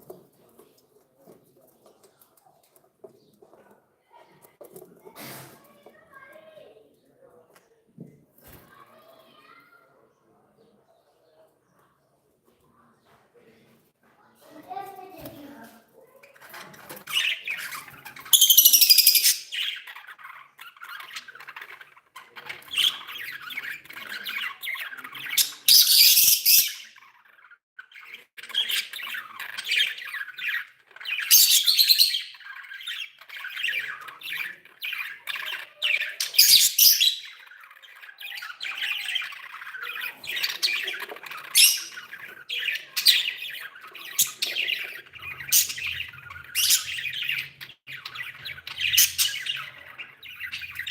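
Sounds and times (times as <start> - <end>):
budgies chattering and warbling: 0.0 - 50.9
harsh budgie squawks: 17.0 - 50.9.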